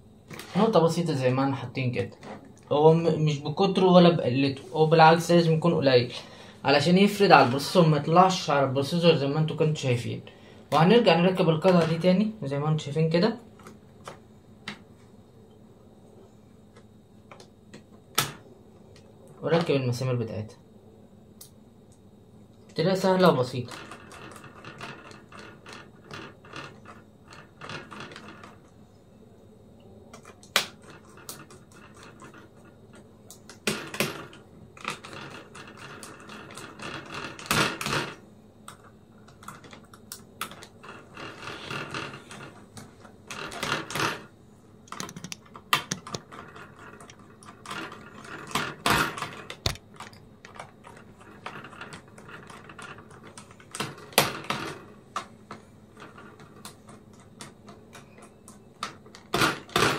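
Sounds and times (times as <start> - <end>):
screwdriver clicking and ratcheting: 44.9 - 46.3.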